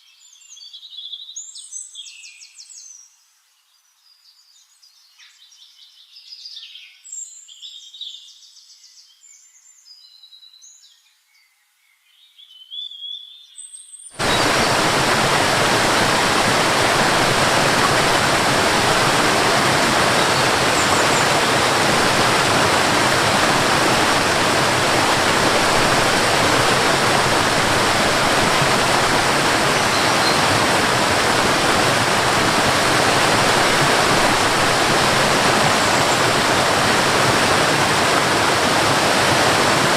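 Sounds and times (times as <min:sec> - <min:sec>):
songbirds chirping: 0:00.0 - 0:38.2
falling water rushing: 0:14.2 - 0:39.9.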